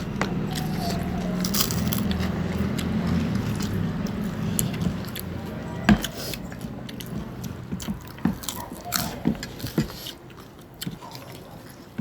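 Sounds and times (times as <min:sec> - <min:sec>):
people chewing and eating: 0:00.0 - 0:12.0.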